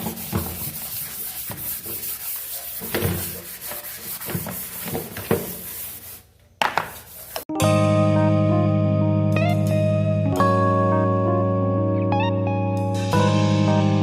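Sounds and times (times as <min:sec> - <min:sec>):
sink being scrubbed: 0:00.0 - 0:07.5.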